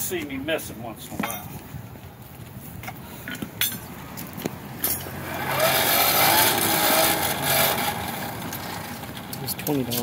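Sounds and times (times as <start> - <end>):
electric blower whining: 5.2 - 9.0.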